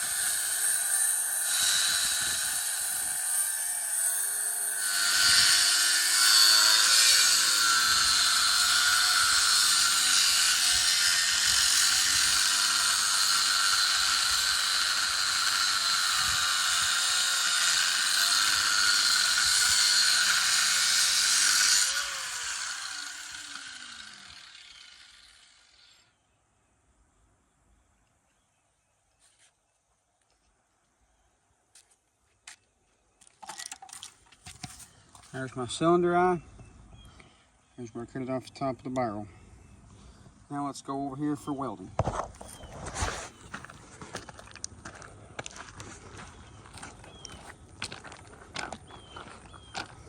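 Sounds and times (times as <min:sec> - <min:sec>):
grinder cutting steel: 0:00.0 - 0:26.2.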